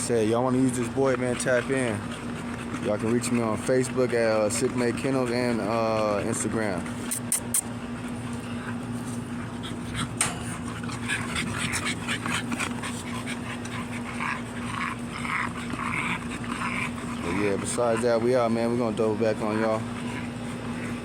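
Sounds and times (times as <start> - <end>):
dog panting: 0.0 - 21.0
steady low hum: 0.0 - 21.0.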